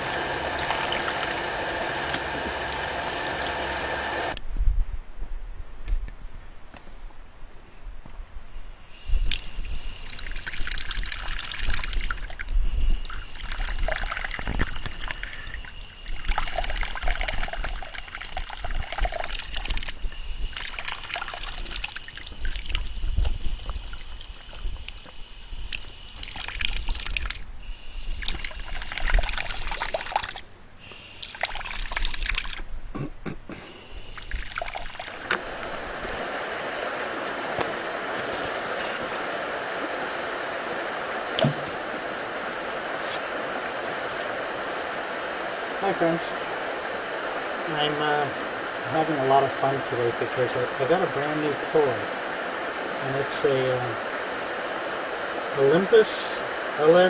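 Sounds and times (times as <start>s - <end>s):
stream water trickling: 0.0s - 4.4s, 9.3s - 27.4s, 28.2s - 30.4s, 31.1s - 32.6s, 34.0s - 49.0s.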